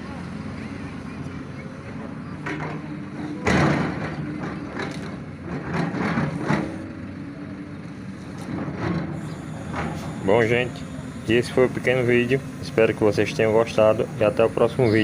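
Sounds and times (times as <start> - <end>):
engine running with rough bursts: 0.0 - 15.0.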